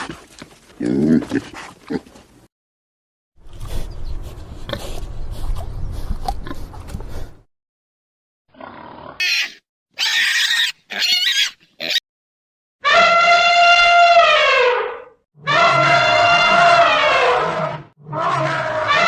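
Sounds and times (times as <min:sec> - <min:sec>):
pig grunting: 0:00.8 - 0:02.2.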